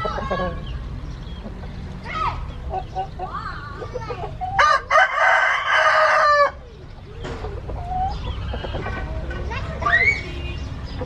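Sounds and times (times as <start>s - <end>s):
rooster crowing: 4.6s - 6.6s.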